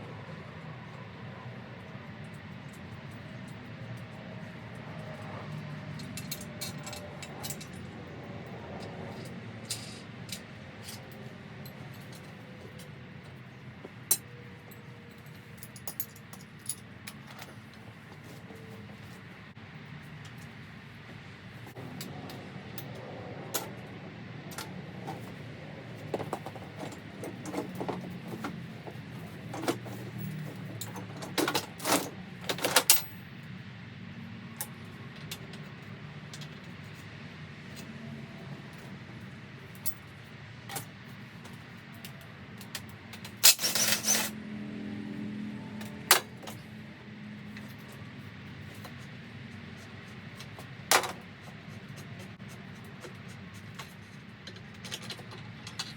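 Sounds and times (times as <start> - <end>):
metal tools clinking: 5.9 - 7.9, 14.1 - 17.5, 43.3 - 44.4.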